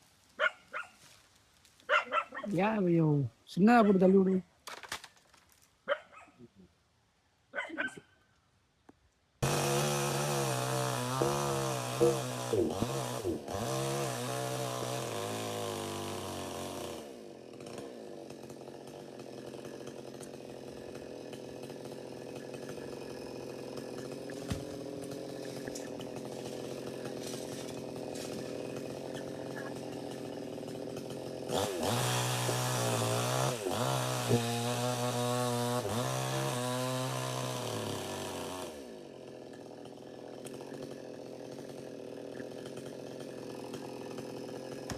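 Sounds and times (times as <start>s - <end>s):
chainsaw cutting wood: 9.4s - 44.9s.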